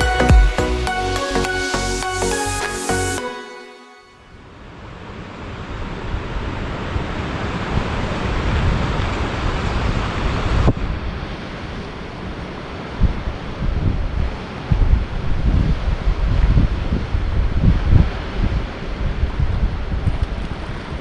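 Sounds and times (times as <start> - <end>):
wind blowing over microphone: 6.1 - 21.0.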